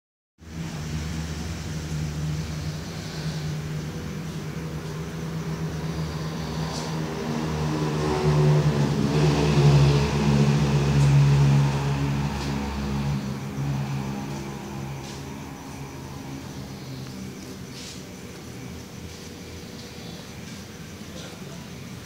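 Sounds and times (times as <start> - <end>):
person snoring: 2.2 - 4.8.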